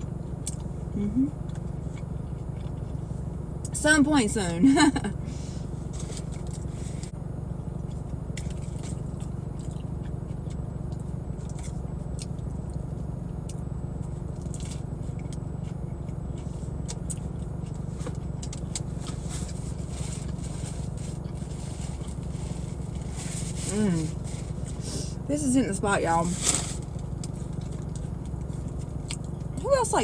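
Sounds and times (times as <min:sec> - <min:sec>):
car engine rumbling: 0:00.0 - 0:30.0
food crinkling and clicking: 0:16.8 - 0:23.6.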